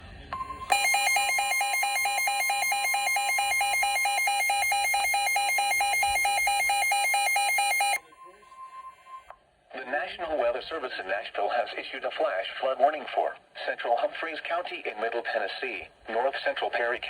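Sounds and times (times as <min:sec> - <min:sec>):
faint steady warning tone: 0:00.3 - 0:09.4
rapid electronic beeping: 0:00.7 - 0:08.9.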